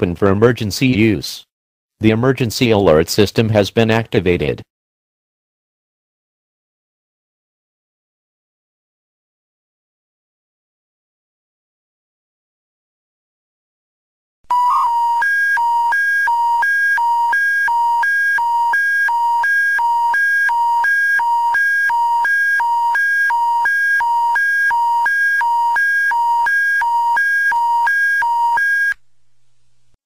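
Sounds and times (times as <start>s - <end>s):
two-pitch warble alert tone: 14.5s - 15.9s.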